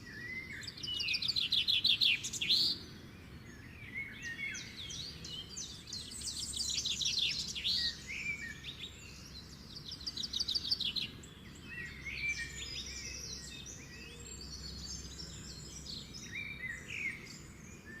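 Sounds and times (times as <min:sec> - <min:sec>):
songbirds chirping and singing: 0:00.0 - 0:18.0.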